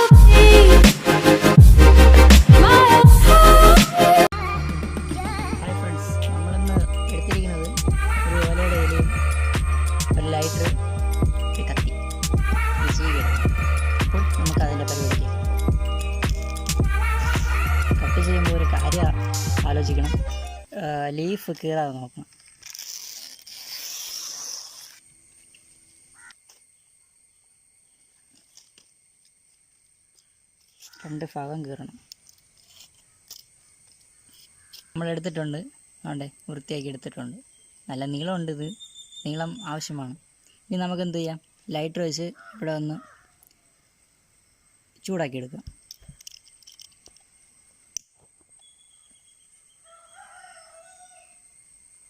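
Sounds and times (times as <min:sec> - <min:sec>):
rooster crowing: 0:49.8 - 0:51.5.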